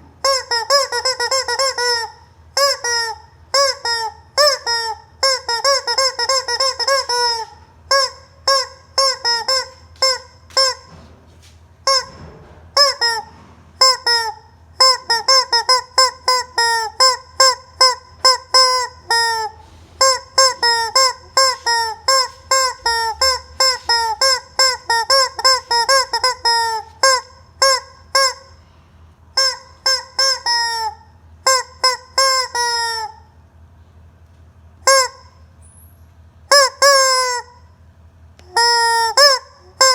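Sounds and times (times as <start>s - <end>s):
rubber chicken toy honking: 0.2s - 11.0s, 11.8s - 28.6s, 29.3s - 33.3s, 34.8s - 35.4s, 36.5s - 37.7s, 38.4s - 39.9s.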